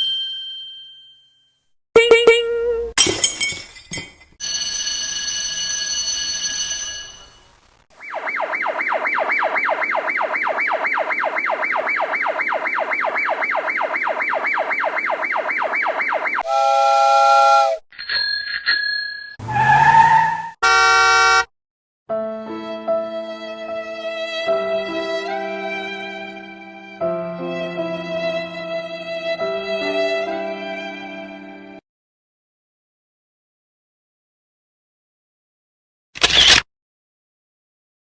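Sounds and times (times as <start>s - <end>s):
bell-like dings: 0.0s - 2.5s
held ringing tone: 0.0s - 2.9s
brief pitched effects: 2.0s - 3.0s
siren-like warble: 8.0s - 17.8s.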